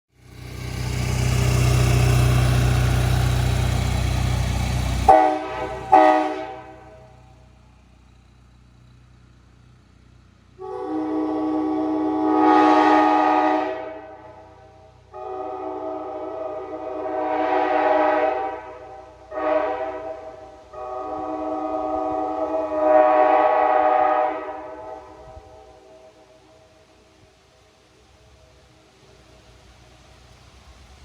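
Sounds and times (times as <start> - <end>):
train horn chord blasts: 4.0 - 7.5, 10.6 - 26.9.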